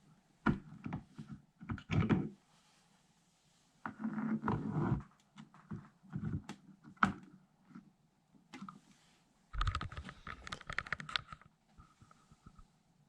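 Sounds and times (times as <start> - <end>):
rapid clicks and light clattering: 9.6 - 11.5.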